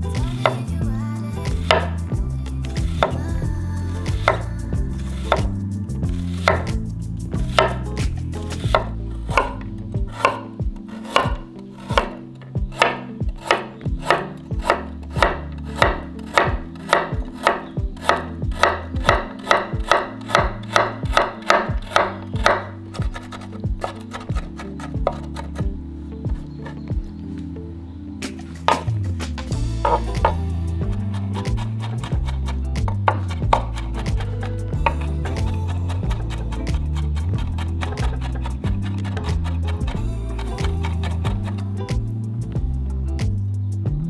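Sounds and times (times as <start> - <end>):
knife chopping food: 1.6 - 2.0, 2.8 - 3.2, 4.1 - 5.5, 6.1 - 6.8, 7.4 - 25.7, 29.8 - 41.6.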